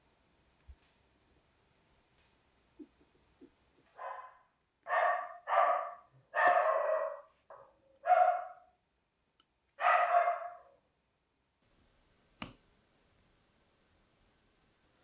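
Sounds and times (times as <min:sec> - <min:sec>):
dog barking: 0:04.0 - 0:08.7, 0:09.8 - 0:10.8.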